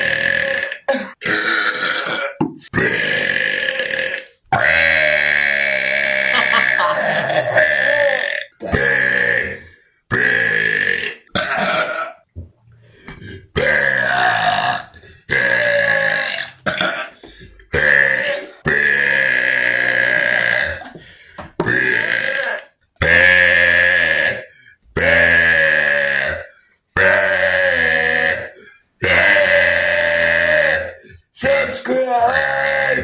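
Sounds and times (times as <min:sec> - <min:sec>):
person burping loudly: 0:00.0 - 0:12.3, 0:13.1 - 0:31.3, 0:32.0 - 0:33.0.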